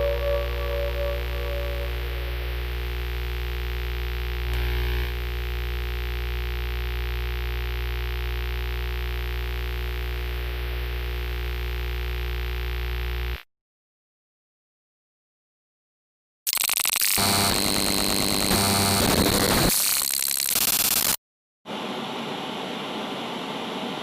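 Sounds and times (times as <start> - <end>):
electronic drone hum: 0.0 - 13.4.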